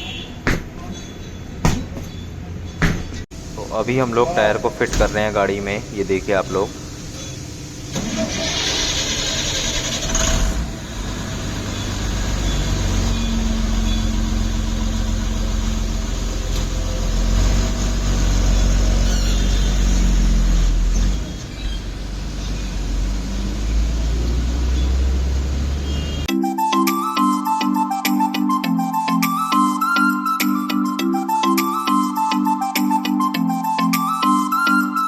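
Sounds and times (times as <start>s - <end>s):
low mechanical drone: 3.4s - 26.3s
music: 26.3s - 35.0s.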